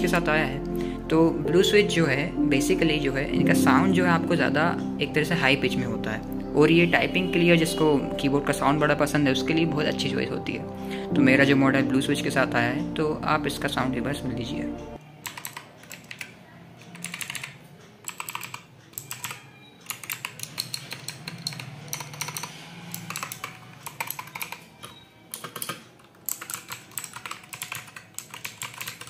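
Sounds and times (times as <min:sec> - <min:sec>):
mechanical keyboard typing clicks: 0:15.0 - 0:29.0.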